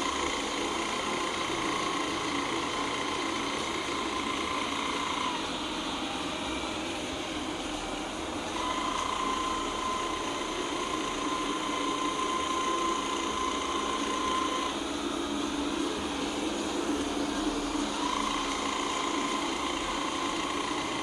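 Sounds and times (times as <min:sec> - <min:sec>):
mechanical whirr: 0:00.0 - 0:05.6, 0:08.5 - 0:14.8.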